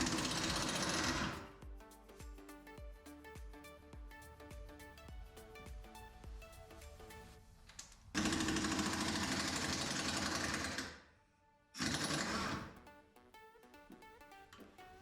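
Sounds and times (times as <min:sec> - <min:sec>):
impact wrench hammering: 0:00.0 - 0:01.4, 0:08.2 - 0:10.9, 0:11.8 - 0:12.7
light plucked music: 0:00.0 - 0:07.4.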